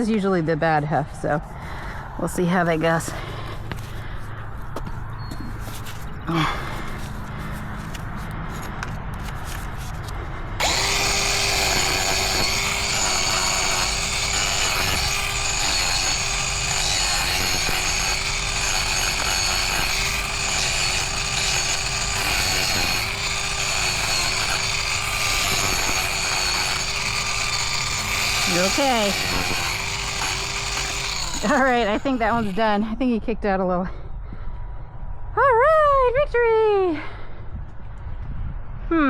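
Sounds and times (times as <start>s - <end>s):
mini angle grinder grinding hoof: 5.5s - 32.9s.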